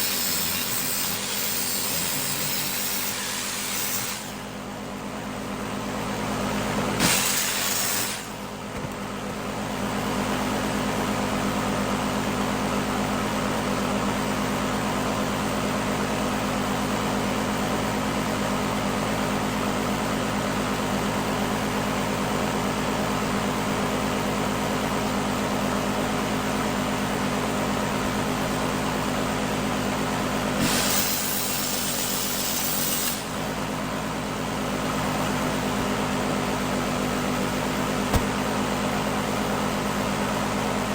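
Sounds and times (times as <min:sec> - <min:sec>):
harsh hissing bursts: 0:00.0 - 0:04.2
power tool cutting metal: 0:00.0 - 0:04.6, 0:07.0 - 0:08.4, 0:30.6 - 0:33.4.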